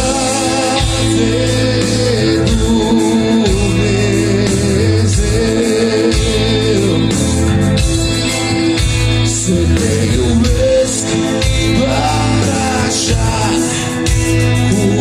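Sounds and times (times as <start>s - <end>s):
rock band playing: 0.0s - 15.0s.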